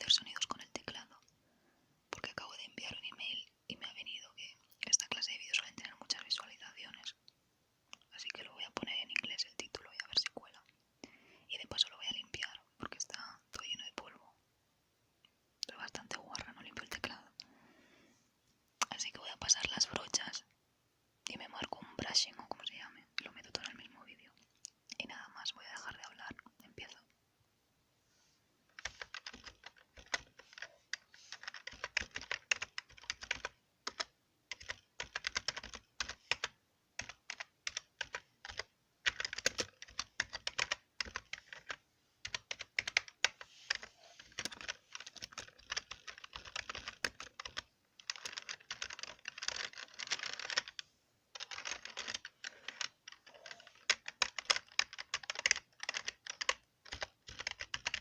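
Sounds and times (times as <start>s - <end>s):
keyboard typing: 28.7s - 58.0s.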